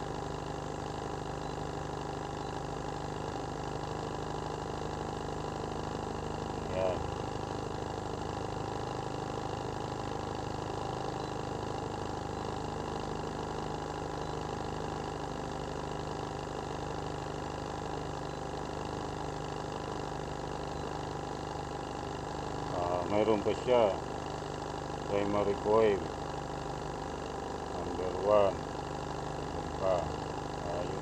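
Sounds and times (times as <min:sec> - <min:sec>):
car engine idling: 0:22.6 - 0:31.0.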